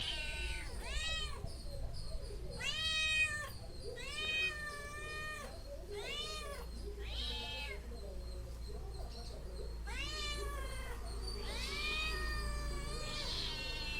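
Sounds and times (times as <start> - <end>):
cat meowing: 0.0 - 1.5, 2.6 - 7.8, 9.8 - 13.9.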